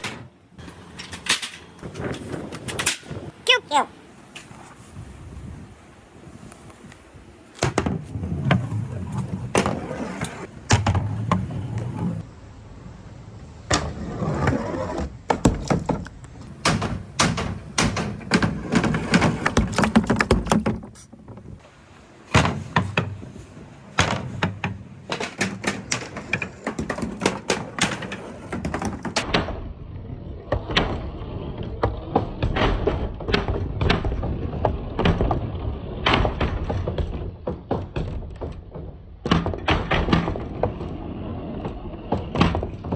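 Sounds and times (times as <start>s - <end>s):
balls rolling down wooden slope: 7.6s - 12.3s, 13.6s - 42.9s.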